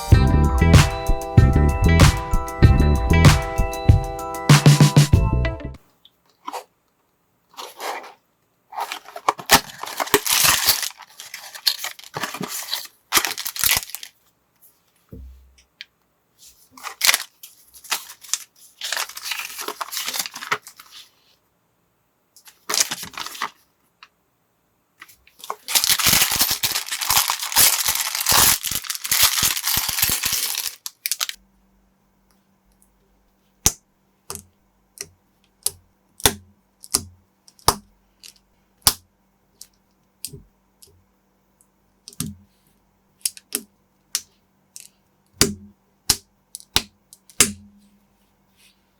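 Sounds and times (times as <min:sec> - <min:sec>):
plastic bags torn and rustled: 0:07.6 - 0:14.3, 0:16.8 - 0:21.1, 0:22.4 - 0:23.7, 0:25.3 - 0:31.4.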